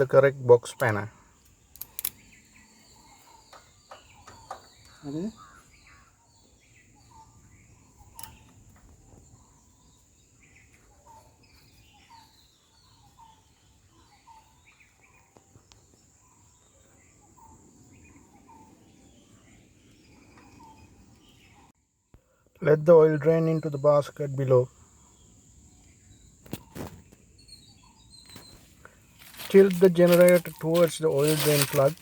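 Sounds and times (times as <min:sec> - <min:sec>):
bird chirping: 0:00.0 - 0:21.8, 0:22.6 - 0:32.0
sharp click: 0:01.8 - 0:02.2.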